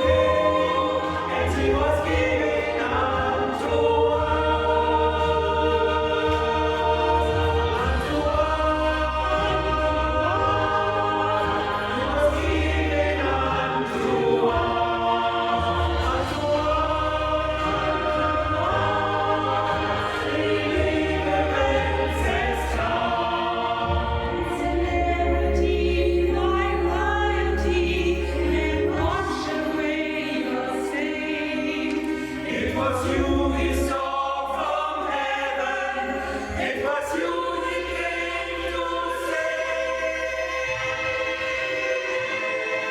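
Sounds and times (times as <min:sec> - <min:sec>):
choir singing: 0:00.0 - 0:42.9.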